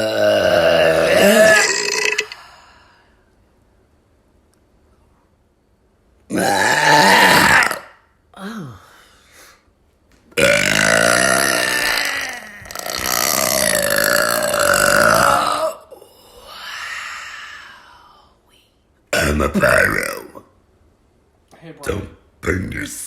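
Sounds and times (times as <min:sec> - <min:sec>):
person burping loudly: 0:00.0 - 0:02.6, 0:06.3 - 0:08.1, 0:10.4 - 0:16.2, 0:19.2 - 0:20.5.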